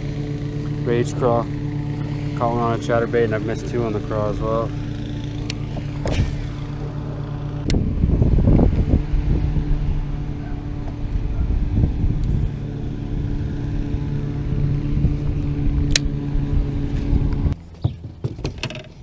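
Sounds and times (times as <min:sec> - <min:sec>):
boat motor humming: 0:00.0 - 0:19.0
low rumble of wind or water: 0:07.6 - 0:17.6.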